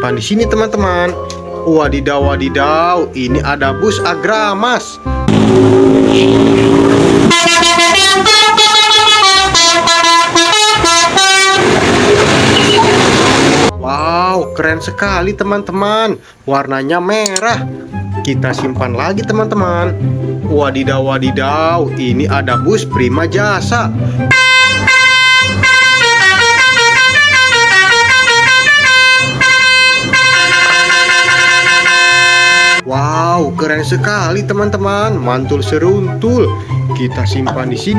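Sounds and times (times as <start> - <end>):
steady low drone: 5.2 - 8.4
noisy rush: 5.3 - 9.0, 10.2 - 13.7
multi-tone bus air horn melody: 5.3 - 13.7, 24.3 - 32.9.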